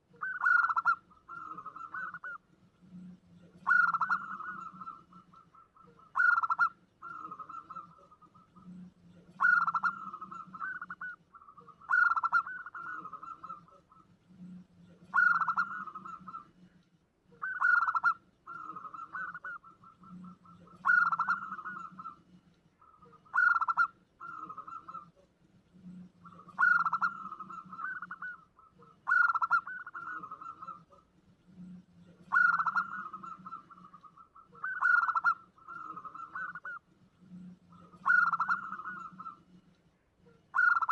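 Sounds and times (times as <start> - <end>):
dove cooing trill: 0.0 - 39.6, 40.2 - 40.9.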